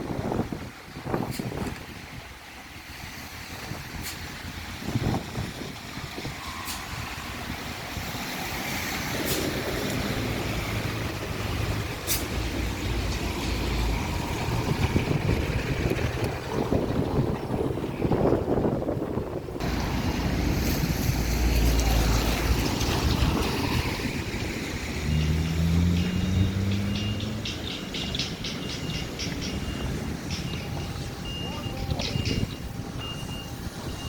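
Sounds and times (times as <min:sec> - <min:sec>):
road traffic: 0:00.0 - 0:34.0.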